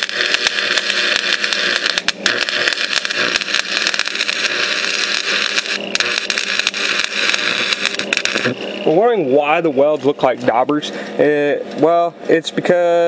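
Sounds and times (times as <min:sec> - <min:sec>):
welding arc crackling: 0:00.0 - 0:10.6.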